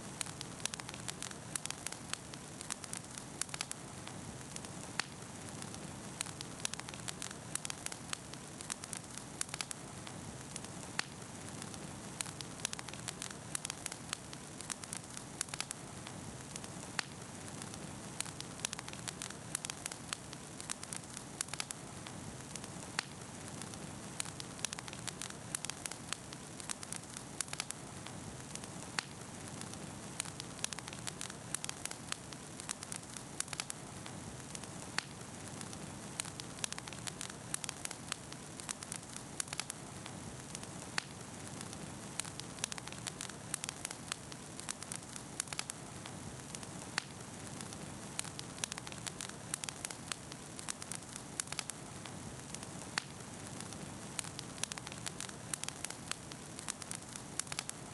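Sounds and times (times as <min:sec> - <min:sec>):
campfire crackling and popping: 0:00.0 - 0:57.9.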